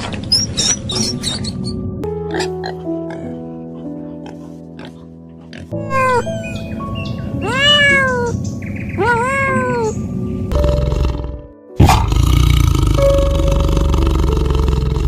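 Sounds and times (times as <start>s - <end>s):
cat meowing: 5.8s - 6.3s, 7.4s - 8.4s, 9.0s - 10.0s.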